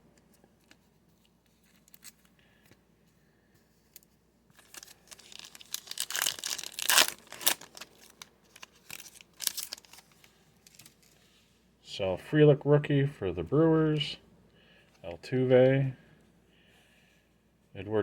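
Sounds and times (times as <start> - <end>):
foil wrapper tearing and crinkling: 4.6 - 11.2.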